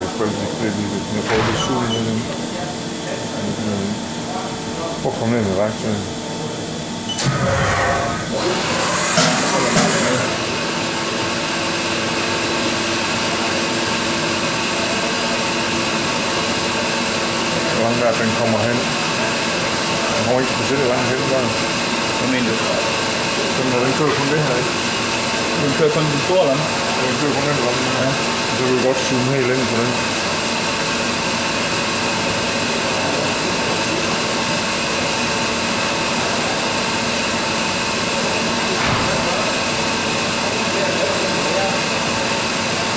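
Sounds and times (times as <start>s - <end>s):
milling machine whirring: 1.2s - 2.6s, 7.1s - 10.7s.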